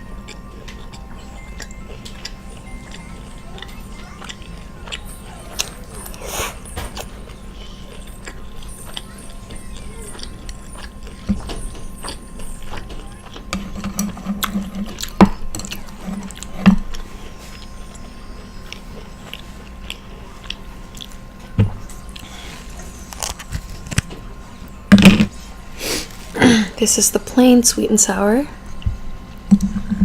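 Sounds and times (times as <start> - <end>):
person chewing food: 0.0 - 24.1.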